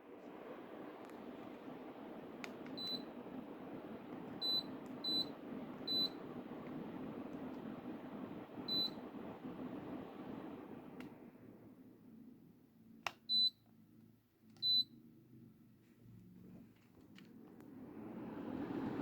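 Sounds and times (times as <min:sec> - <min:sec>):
air conditioner fan whoosh: 0:00.0 - 0:12.4, 0:17.1 - 0:19.0
air conditioner short high beeps: 0:02.6 - 0:03.2, 0:04.4 - 0:06.2, 0:08.6 - 0:09.0, 0:13.3 - 0:13.6, 0:14.6 - 0:15.0.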